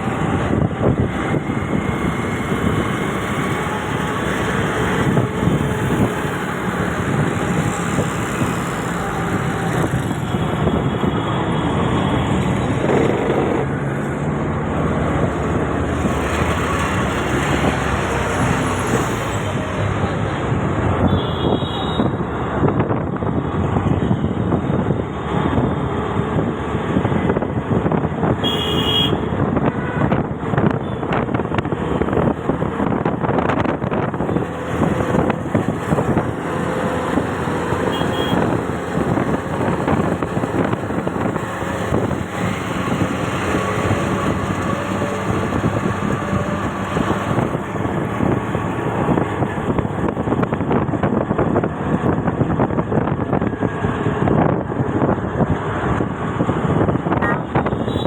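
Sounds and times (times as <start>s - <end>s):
road traffic noise: 0.0s - 58.0s
car horn toots: 28.4s - 30.1s, 37.9s - 38.6s, 57.2s - 58.0s.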